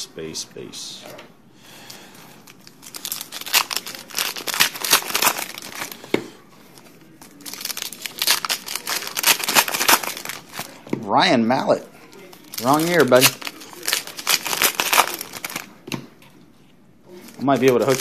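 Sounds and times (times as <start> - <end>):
wrapper tearing and crinkling: 2.4 - 6.0, 7.2 - 10.8, 12.3 - 15.7, 17.3 - 18.0.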